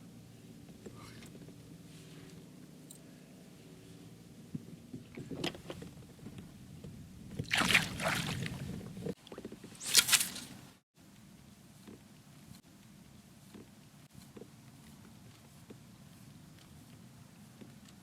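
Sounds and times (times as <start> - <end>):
low steady hum: 0.0 - 18.0
water splashing beside kayak: 7.3 - 10.8.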